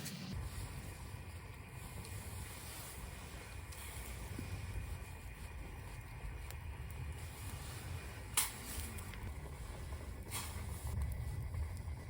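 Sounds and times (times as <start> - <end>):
wind buffeting microphone: 0.3 - 12.0.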